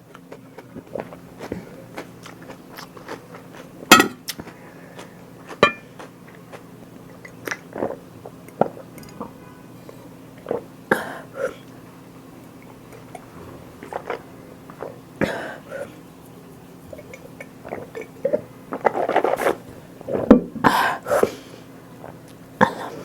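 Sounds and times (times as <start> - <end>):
biting and chewing: 0.0 - 9.0, 13.8 - 15.0.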